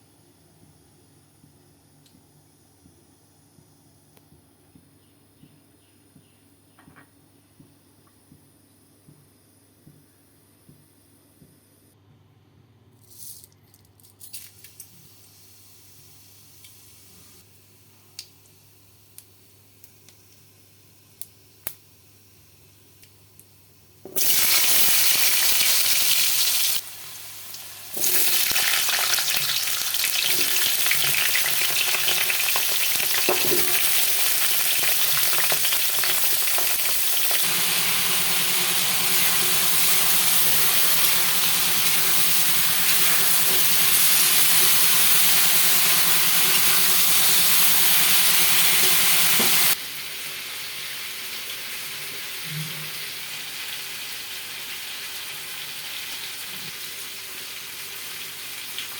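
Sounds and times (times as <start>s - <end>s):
food sizzling in hot oil: 24.2s - 52.4s.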